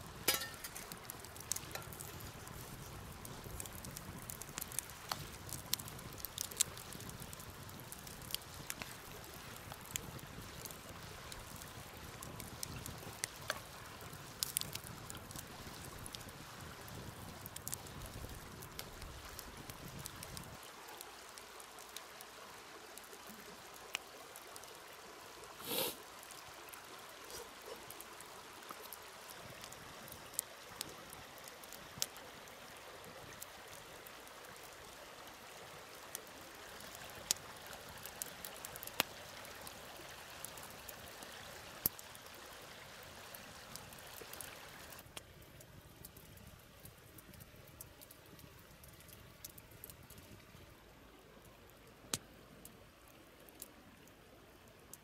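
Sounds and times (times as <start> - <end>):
campfire crackling: 0.0 - 55.0
rustle: 0.0 - 55.0
river flowing: 20.6 - 45.1.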